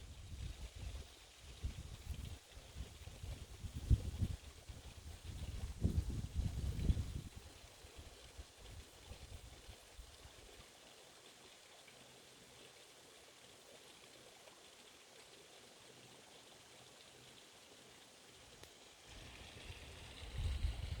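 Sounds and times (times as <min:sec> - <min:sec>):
flowing water hiss: 0:00.0 - 0:21.0
low rumble: 0:19.4 - 0:21.0.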